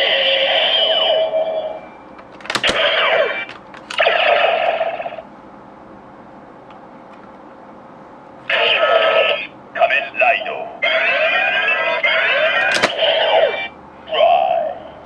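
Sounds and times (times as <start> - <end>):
plastic clicks: 2.2 - 4.0, 12.6 - 13.0.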